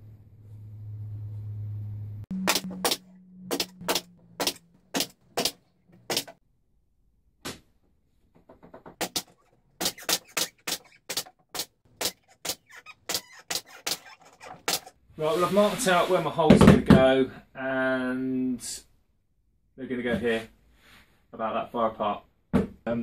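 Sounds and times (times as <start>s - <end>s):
hand saw cutting board: 2.3s - 6.4s, 9.0s - 15.7s.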